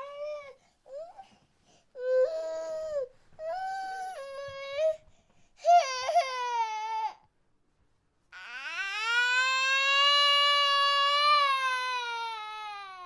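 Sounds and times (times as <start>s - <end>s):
baby crying: 8.4s - 13.0s.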